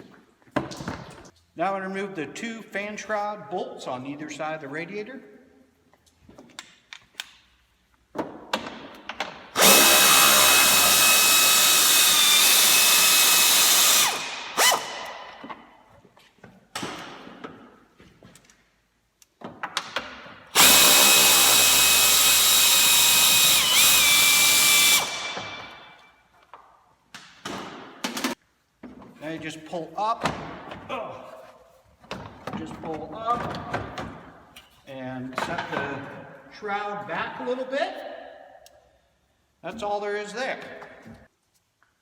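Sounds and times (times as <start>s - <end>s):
power drill whining: 9.6s - 15.1s, 20.6s - 25.9s.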